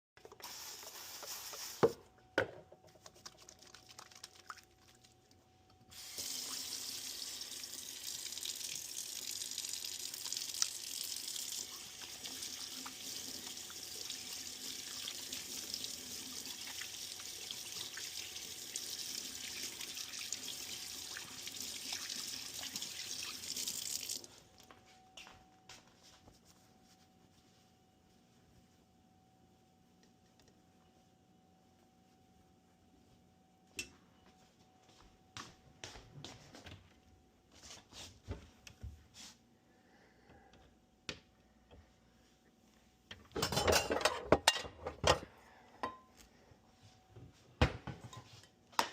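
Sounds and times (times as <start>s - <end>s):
tap water running into sink: 5.9s - 24.3s.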